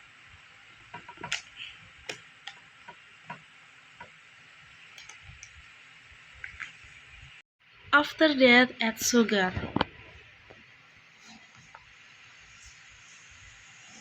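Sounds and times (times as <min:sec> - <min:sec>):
faint steady hiss: 0:00.0 - 0:07.4.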